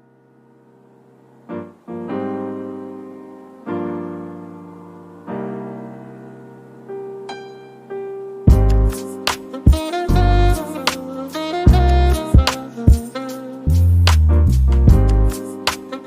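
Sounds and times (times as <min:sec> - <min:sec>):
piano chords ringing: 0:00.0 - 0:16.0.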